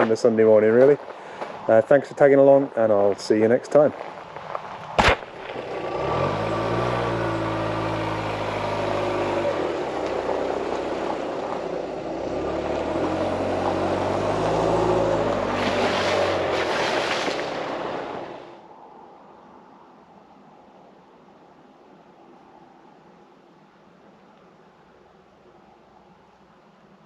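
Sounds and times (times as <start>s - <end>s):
engine running: 5.3s - 18.4s.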